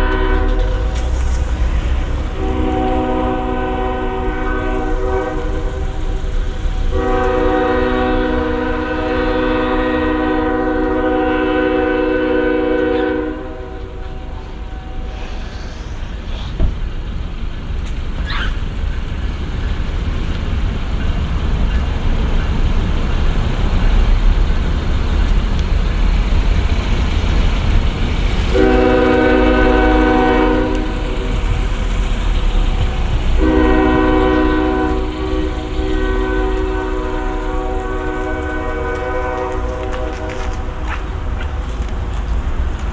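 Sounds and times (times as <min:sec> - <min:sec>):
locomotive air horn: 0:00.0 - 0:16.0, 0:28.5 - 0:41.2
diesel locomotive engine rumble: 0:00.0 - 0:42.9.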